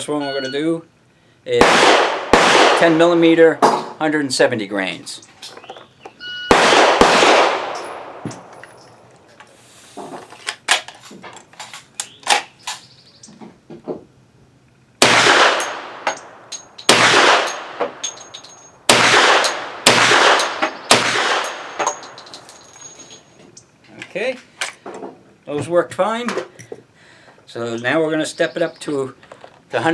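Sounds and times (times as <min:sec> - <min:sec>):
pistol shots: 0:01.6 - 0:03.2, 0:06.5 - 0:08.5, 0:15.0 - 0:18.2, 0:18.9 - 0:22.4
light metallic clicks and clinks: 0:15.6 - 0:18.8, 0:20.4 - 0:24.8.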